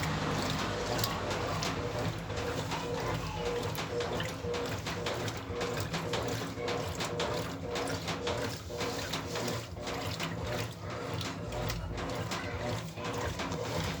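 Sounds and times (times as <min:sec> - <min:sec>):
washing machine hum: 0:00.0 - 0:14.0
water splashing in washing machine: 0:00.0 - 0:14.0.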